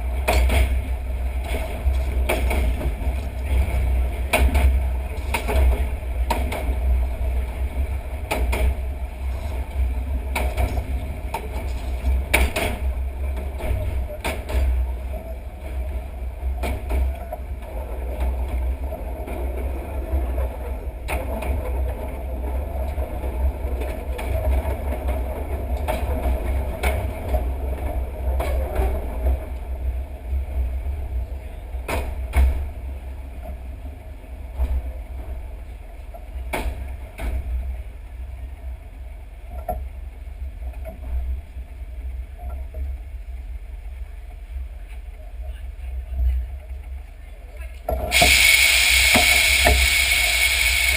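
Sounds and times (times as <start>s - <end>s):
wind buffeting and rumble: 0.0s - 44.8s
wheels clacking on rail joints: 0.0s - 50.9s.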